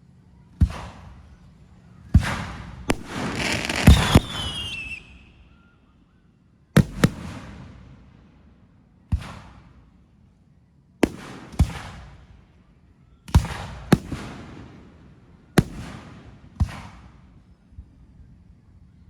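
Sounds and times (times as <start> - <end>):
fireworks bangs: 2.1 - 5.2, 6.8 - 7.9, 11.0 - 12.3, 13.3 - 17.3
fireworks crackling: 2.3 - 5.2, 15.6 - 17.1
falling whistle: 3.7 - 5.8.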